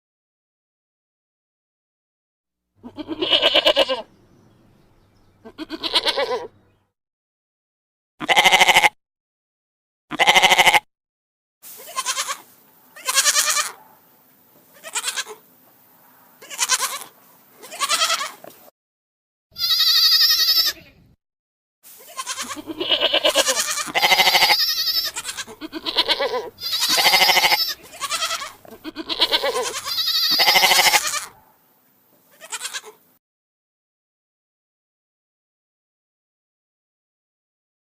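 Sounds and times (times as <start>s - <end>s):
goat bleating: 2.8s - 4.2s, 5.2s - 6.8s, 8.2s - 9.0s, 10.1s - 10.8s, 11.7s - 13.9s, 14.7s - 15.5s, 16.4s - 18.5s, 19.5s - 21.1s, 21.9s - 31.4s, 32.3s - 33.0s.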